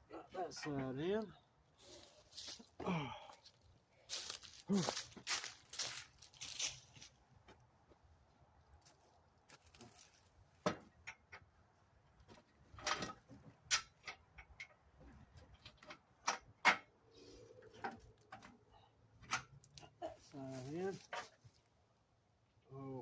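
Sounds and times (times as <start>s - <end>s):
tools clicking and knocking: 10.7s - 11.6s, 12.4s - 16.9s.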